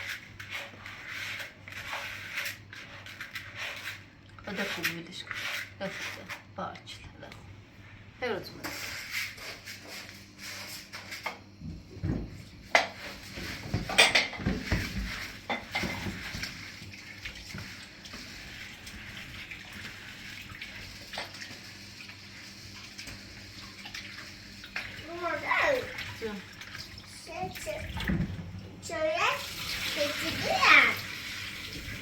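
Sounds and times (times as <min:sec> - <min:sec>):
water running from a tap: 0:12.1 - 0:32.0
dishes and utensils clinking: 0:13.6 - 0:16.4.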